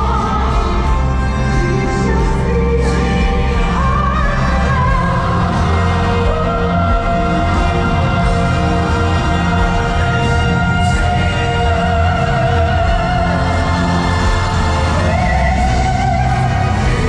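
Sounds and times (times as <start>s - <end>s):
music with long held notes: 0.0s - 17.0s
steady low bass: 0.0s - 17.0s.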